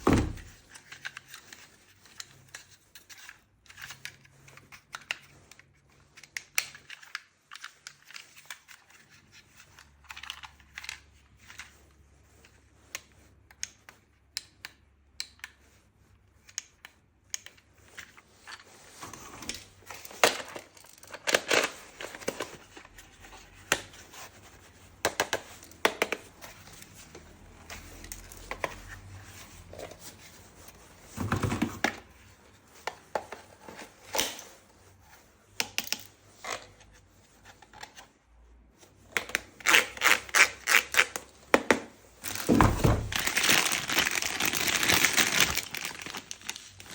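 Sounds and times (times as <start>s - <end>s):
packaging crinkling and tearing: 19.4s - 22.9s, 42.2s - 46.9s.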